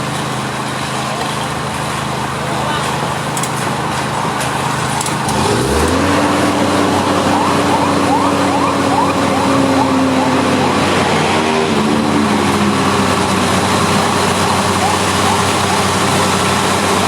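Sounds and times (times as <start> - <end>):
heavy machine engine running: 0.0 - 17.0.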